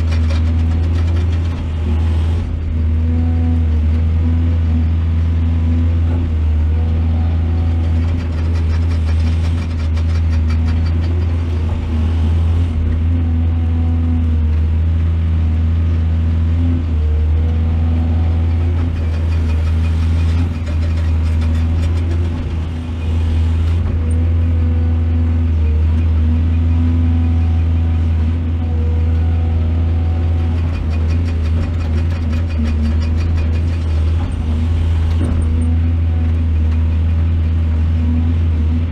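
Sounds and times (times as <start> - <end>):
excavator diesel engine running: 0.0 - 38.9
rattling: 7.8 - 12.6, 18.7 - 24.1.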